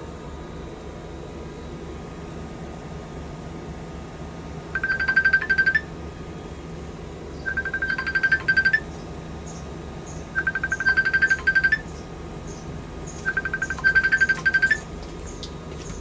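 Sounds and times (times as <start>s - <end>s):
electronic ringtone trill: 4.8s - 5.9s, 7.5s - 8.9s, 10.4s - 11.9s, 13.2s - 14.8s.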